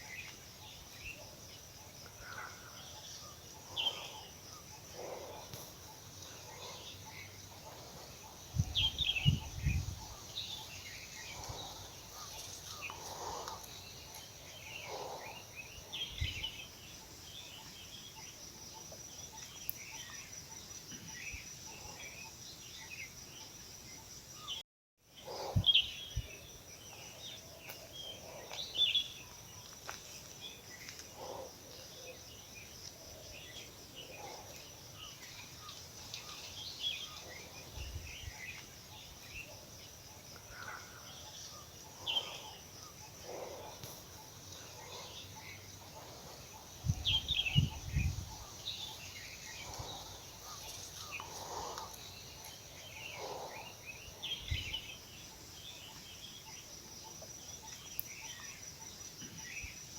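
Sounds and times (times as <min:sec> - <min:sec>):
small birds chirping: 0:00.0 - 0:24.6, 0:25.2 - 0:59.8
high insect trill: 0:25.3 - 0:59.9.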